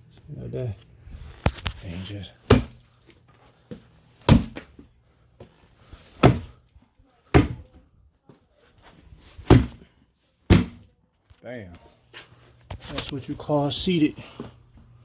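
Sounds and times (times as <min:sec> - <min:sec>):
tire slammed onto tire: 0:02.5 - 0:02.8, 0:04.3 - 0:04.6, 0:06.2 - 0:06.5, 0:09.4 - 0:09.8, 0:10.5 - 0:10.8.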